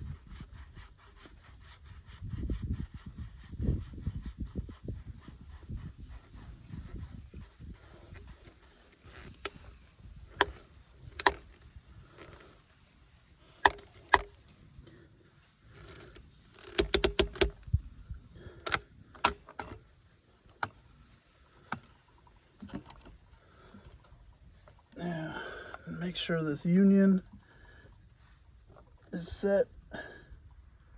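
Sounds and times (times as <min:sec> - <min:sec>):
plastic fittings clicking and knocking: 0:09.1 - 0:11.6, 0:13.6 - 0:14.4, 0:16.6 - 0:17.8, 0:18.6 - 0:19.8, 0:22.6 - 0:23.2.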